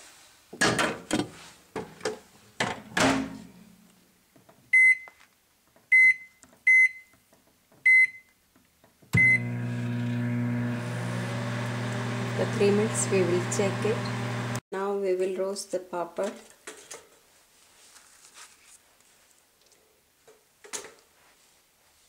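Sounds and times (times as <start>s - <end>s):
keypad beeps: 5.9s - 7.1s, 7.9s - 8.3s
microwave running hum: 9.2s - 14.6s.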